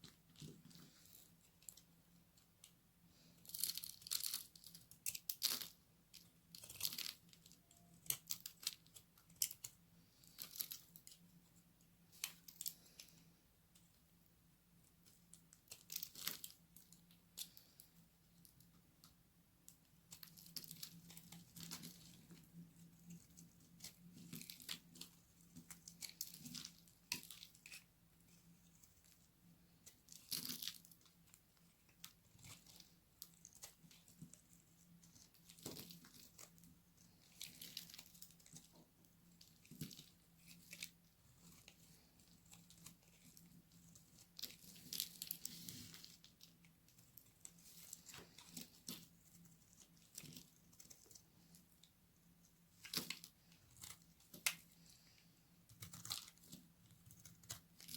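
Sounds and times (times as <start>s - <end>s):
knife crunching through dry soap: 3.4s - 10.8s, 52.8s - 55.1s, 55.7s - 57.9s.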